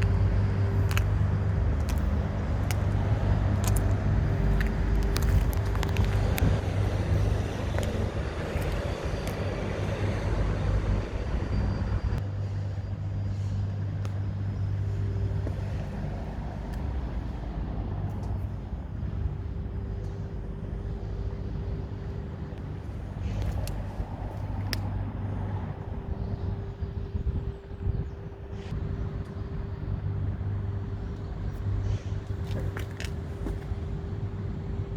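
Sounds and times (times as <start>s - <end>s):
car engine idling: 0.0s - 34.9s.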